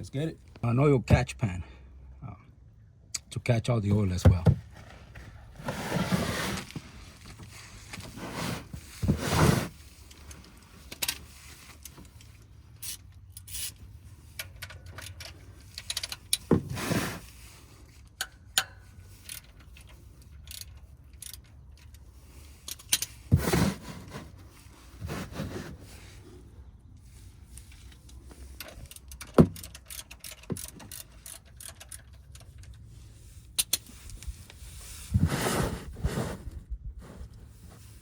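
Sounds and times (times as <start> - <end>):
plastic pan being handled: 4.2 - 9.8
tools scraping and clinking: 4.8 - 36.2
scuffs and knocks: 23.3 - 26.0.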